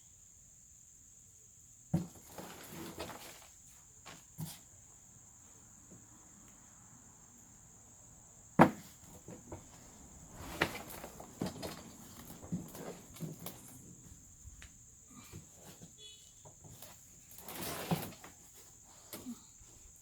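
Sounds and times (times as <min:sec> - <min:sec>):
rustling in soil: 0:02.0 - 0:04.7, 0:08.9 - 0:20.0.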